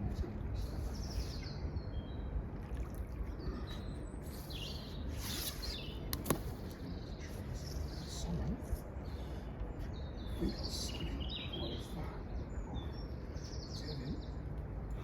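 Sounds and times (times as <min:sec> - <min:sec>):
birds chirping: 0:00.0 - 0:02.4, 0:03.2 - 0:15.0
low outdoor rumble: 0:00.0 - 0:15.0
sharp click: 0:06.1 - 0:06.4.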